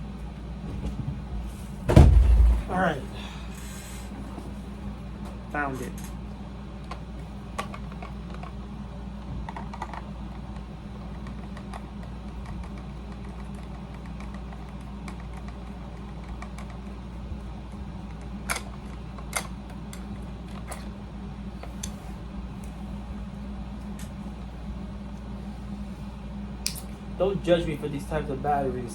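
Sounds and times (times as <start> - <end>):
air conditioner hum: 0.0 - 28.9.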